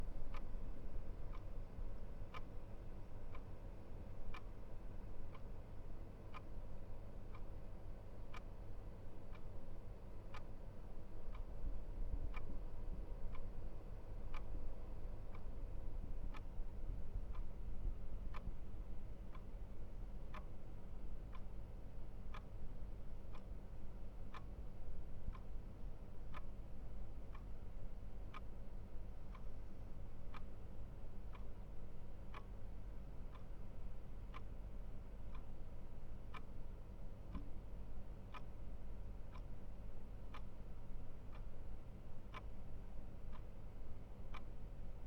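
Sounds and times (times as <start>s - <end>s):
clock ticking: 24.3s - 24.5s, 34.3s - 35.7s, 36.3s - 36.6s, 37.3s - 37.5s, 38.3s - 38.5s, 39.3s - 39.6s.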